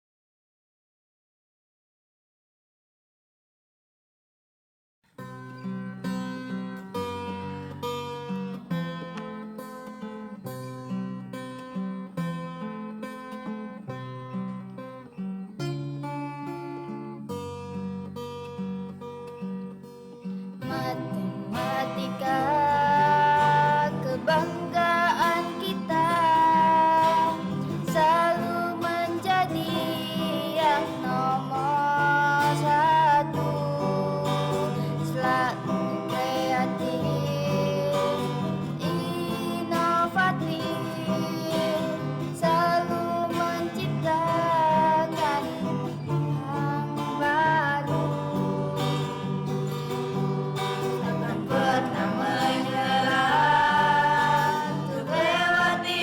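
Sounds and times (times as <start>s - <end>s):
strummed guitar: 5.2s - 56.0s
person singing: 20.6s - 49.8s, 50.6s - 56.0s.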